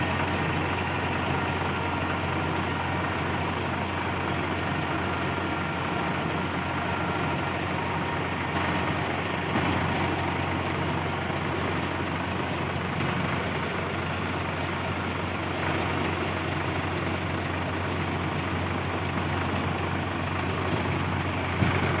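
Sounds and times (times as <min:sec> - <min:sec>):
combine harvester diesel engine: 0:00.0 - 0:22.0.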